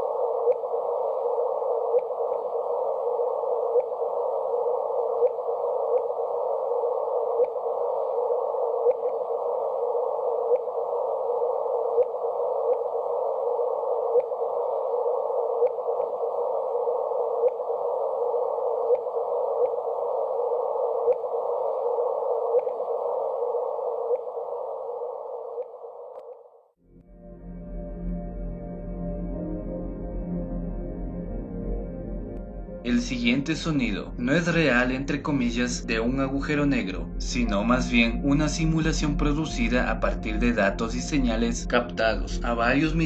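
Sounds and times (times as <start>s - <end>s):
radio static hiss: 0.0s - 26.6s, 32.9s - 43.0s
sharp static clicks: 0.0s - 26.8s.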